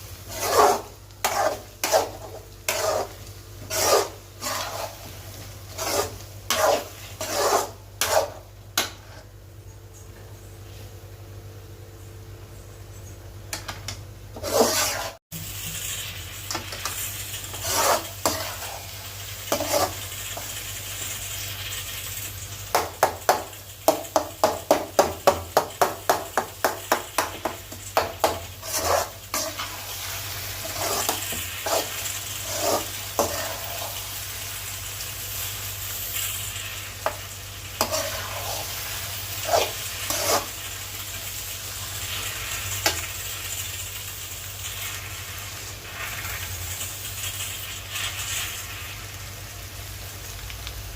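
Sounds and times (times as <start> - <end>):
spatula scraping a pan: 0.0 - 9.3, 14.4 - 15.2, 16.5 - 20.6, 27.2 - 34.4, 36.2 - 43.3, 44.7 - 46.5, 47.3 - 48.8
food sizzling in a pan: 0.0 - 9.5, 13.6 - 50.9.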